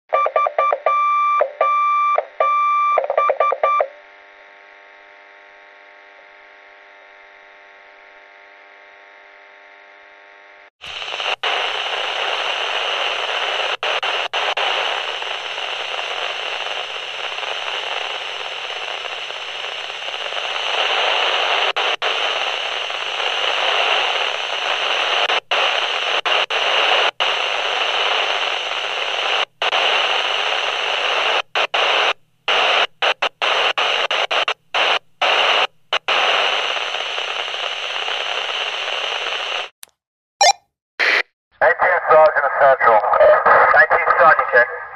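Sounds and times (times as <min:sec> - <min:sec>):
radio static hiss: 0:04.2 - 0:39.8, 0:41.0 - 0:44.9
short electronic beeps: 0:40.4 - 0:40.6.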